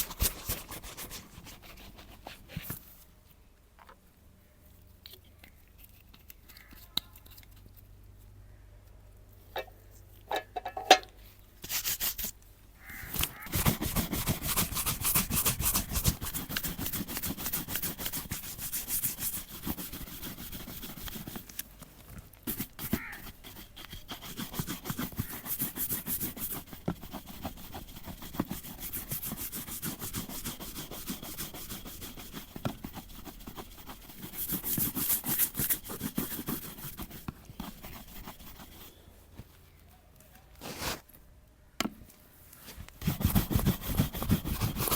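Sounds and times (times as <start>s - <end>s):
brush scrubbing a boot: 0.0s - 2.8s, 13.0s - 39.0s, 43.0s - 44.9s.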